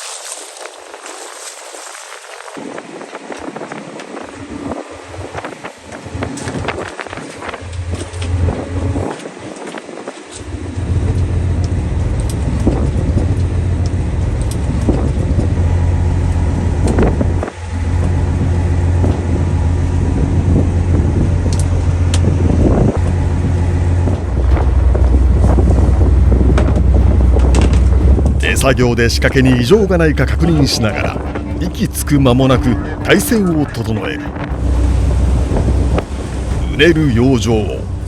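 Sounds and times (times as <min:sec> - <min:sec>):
water noise: 0:00.0 - 0:15.0, 0:16.3 - 0:38.0
wind: 0:00.0 - 0:38.0
boat engine humming: 0:10.4 - 0:38.0.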